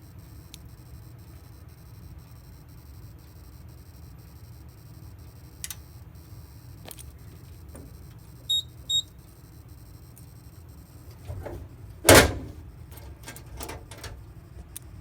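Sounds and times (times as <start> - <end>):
high-pitched alarm panel beeps: 0.0 - 14.2
low steady hum: 11.0 - 15.0.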